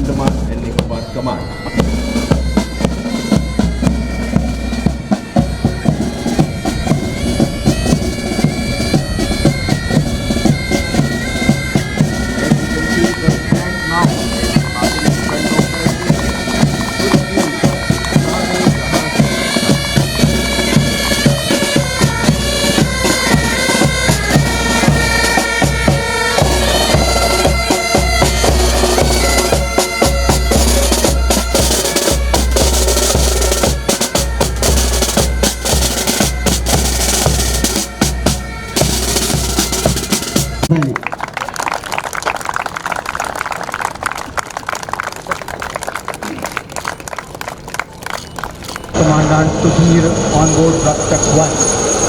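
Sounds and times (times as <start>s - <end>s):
bagpipes playing a melody: 0.0s - 40.7s
drums beating: 0.0s - 41.2s.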